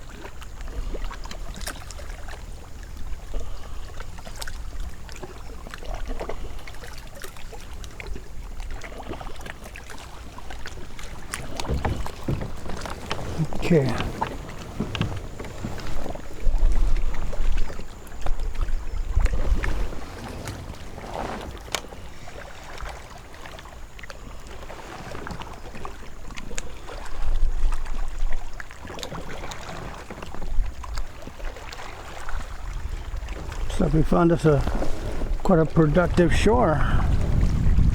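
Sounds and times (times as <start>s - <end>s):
wind rumbling on microphone: 10.0s - 22.8s, 32.2s - 37.9s
light knocks and ticks: 11.1s - 15.8s.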